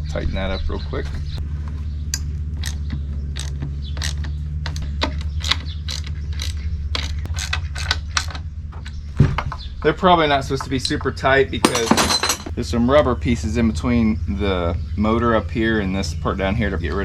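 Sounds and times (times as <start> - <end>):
low hum: 0.0 - 17.0
ratchet wrench clicking: 3.4 - 8.4.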